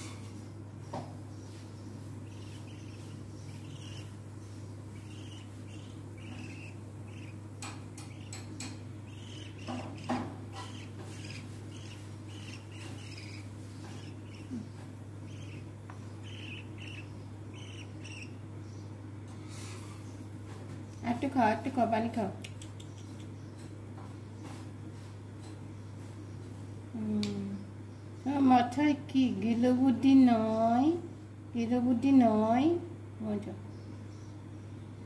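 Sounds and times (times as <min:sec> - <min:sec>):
steady low hum: 0:00.0 - 0:35.0
budgie chick chirping: 0:01.3 - 0:19.0.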